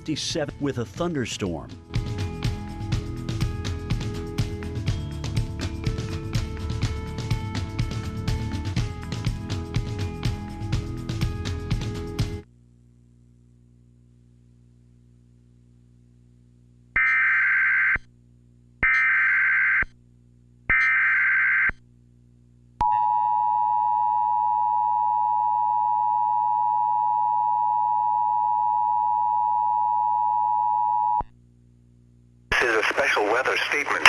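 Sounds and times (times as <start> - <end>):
low steady hum: 12.4 - 17.3, 18.0 - 18.8, 19.9 - 20.9, 21.7 - 34.0.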